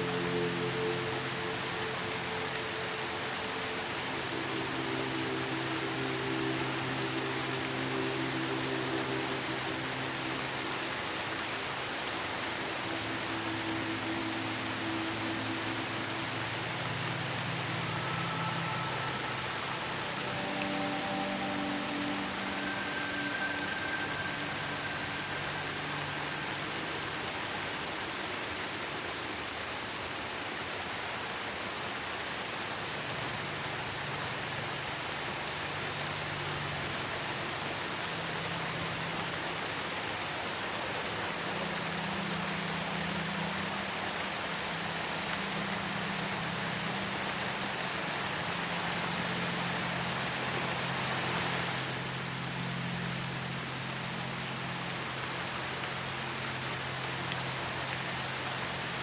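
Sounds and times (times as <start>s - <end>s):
ambient pad tones: 0.0s - 28.7s
steady rain falling: 0.0s - 59.0s.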